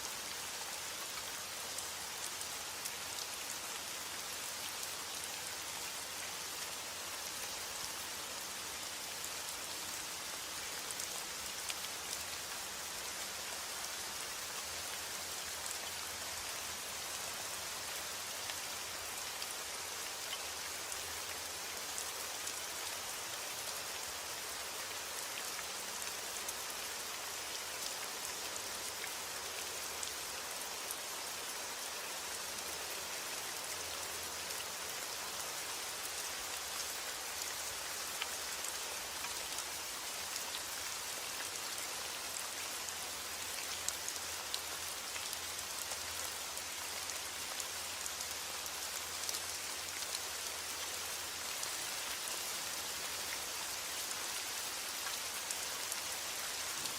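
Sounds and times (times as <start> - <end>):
heavy rain on a roof: 0.0 - 56.9.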